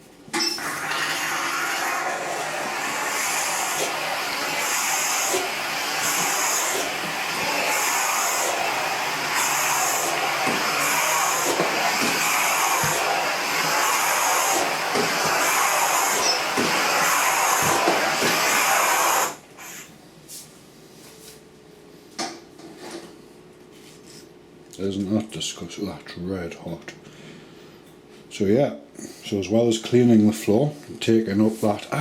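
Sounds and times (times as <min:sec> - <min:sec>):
steam cleaner hissing: 0:00.4 - 0:19.9.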